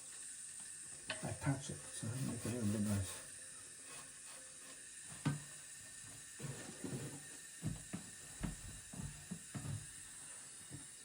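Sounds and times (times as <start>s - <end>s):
soft knocks and rubbing: 6.4s - 9.9s.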